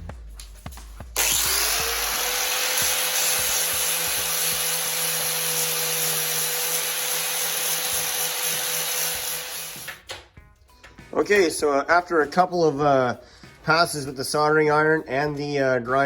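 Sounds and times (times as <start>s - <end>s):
power grinder grinding metal: 1.2s - 10.0s.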